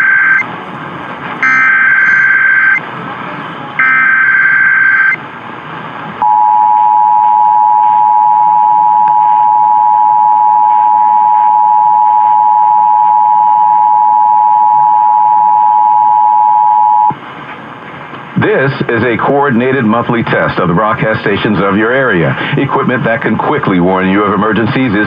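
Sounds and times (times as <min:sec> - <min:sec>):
two-tone alert signal: 0:00.0 - 0:00.5, 0:01.4 - 0:02.8, 0:03.8 - 0:05.2.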